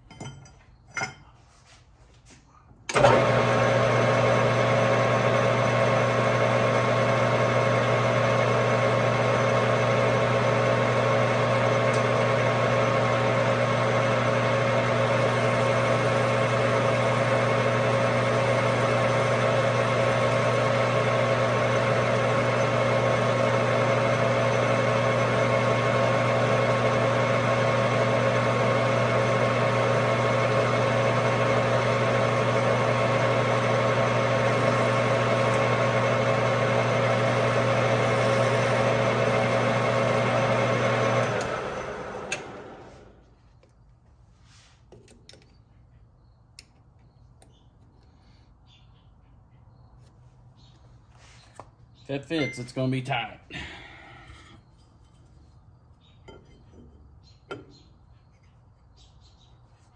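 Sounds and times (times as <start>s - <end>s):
metal lathe running: 2.9s - 43.1s.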